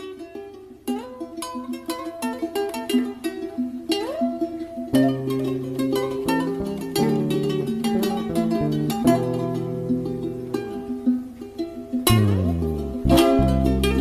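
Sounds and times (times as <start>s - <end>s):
plucked string notes: 0.0s - 14.0s
bass line: 12.1s - 14.0s.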